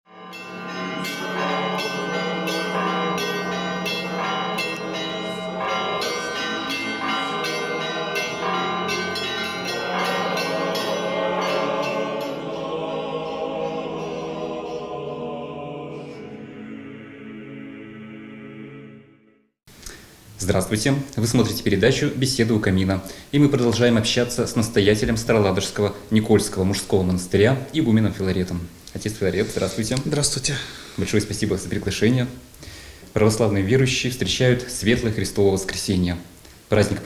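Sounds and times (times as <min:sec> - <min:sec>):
bells struck: 0:00.1 - 0:14.9
sustained low choir-like tone: 0:00.2 - 0:19.4.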